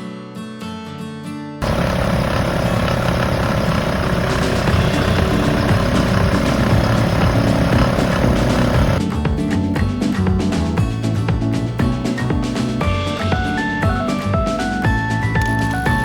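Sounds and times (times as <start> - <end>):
air compressor running: 1.6 - 9.0.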